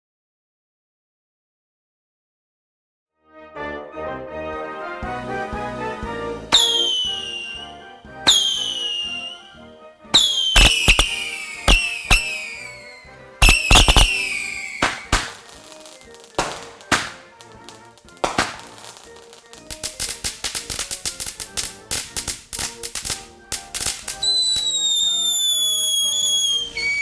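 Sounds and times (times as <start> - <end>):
background music: 3.2 - 27.0
firecracker snaps: 6.5 - 9.4, 10.2 - 27.0
firework bangs: 6.5 - 9.6, 10.2 - 27.0
whistling firework: 6.5 - 27.0.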